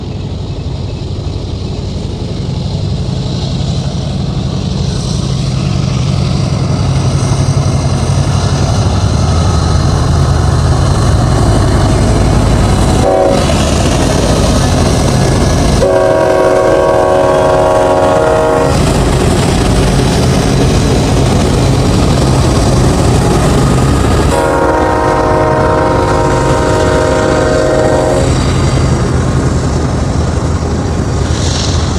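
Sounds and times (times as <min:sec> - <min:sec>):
diesel locomotive engines droning: 0:00.0 - 0:31.9
train horn blasts: 0:13.0 - 0:13.9, 0:15.8 - 0:19.0, 0:24.2 - 0:29.0.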